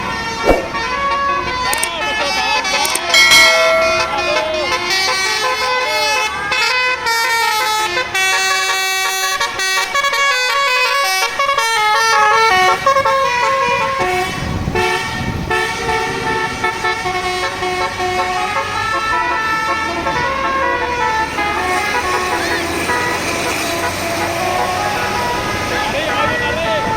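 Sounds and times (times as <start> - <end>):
melodic air horn: 0.0 - 26.9.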